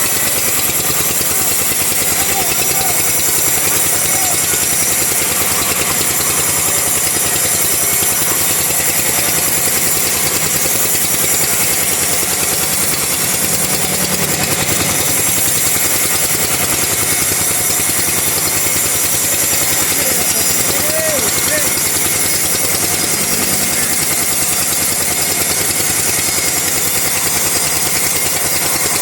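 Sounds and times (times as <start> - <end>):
chainsaw cutting log: 0.0 - 29.0.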